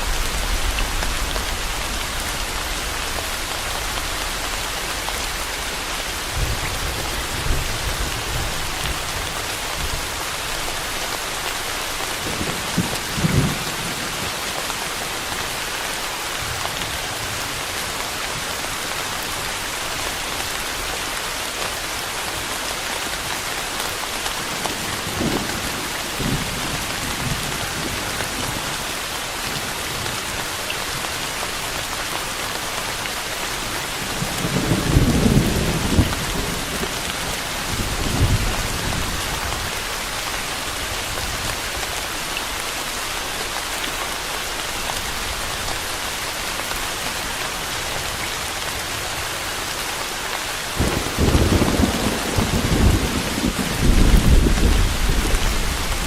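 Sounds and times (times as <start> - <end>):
steady rain: 0.0 - 56.0
thunder rumbles: 34.2 - 39.8, 50.8 - 56.0.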